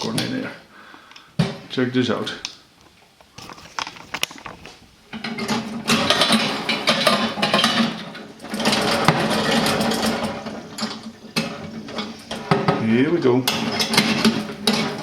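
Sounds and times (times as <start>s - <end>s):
popcorn machine rattling clatter: 5.1s - 15.0s.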